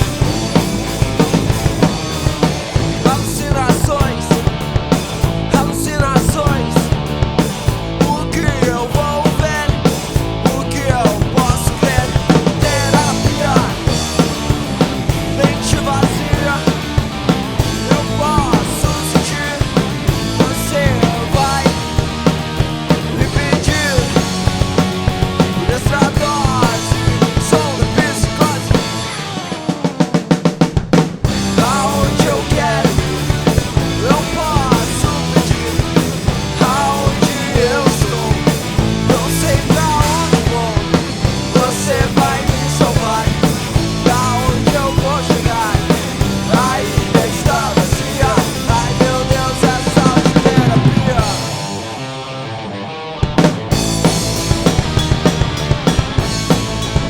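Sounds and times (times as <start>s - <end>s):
drum kit beat: 0.0s - 52.0s, 53.3s - 57.0s
rock band music: 0.0s - 57.0s.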